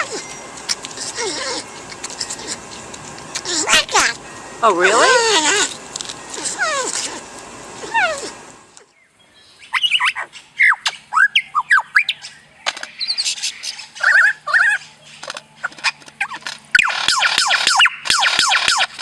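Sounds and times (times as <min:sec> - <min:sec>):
bird chirping: 0:07.8 - 0:16.9.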